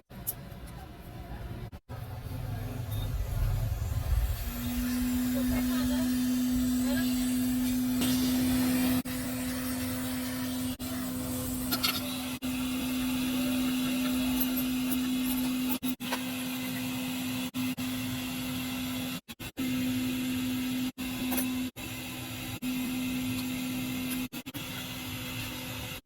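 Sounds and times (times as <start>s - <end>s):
electric motor humming: 3.2s - 15.8s.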